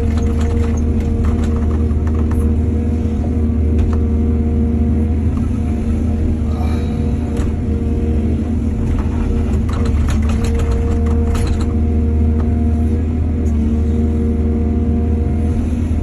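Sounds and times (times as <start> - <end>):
rapid clattering knocks: 0.0 - 2.5, 8.8 - 11.8
excavator diesel engine running: 0.0 - 16.0.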